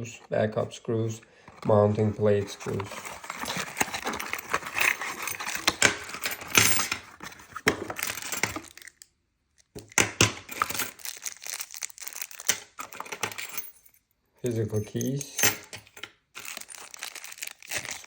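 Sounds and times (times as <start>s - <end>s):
plastic packaging crinkling: 1.6s - 6.2s, 7.1s - 13.2s, 16.4s - 18.0s
small metal parts clinking: 2.8s - 9.0s, 9.6s - 18.0s.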